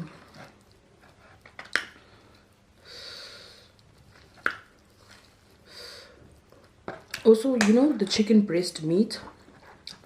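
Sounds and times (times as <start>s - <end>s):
breath through nose: 2.0s - 3.8s, 5.6s - 6.3s.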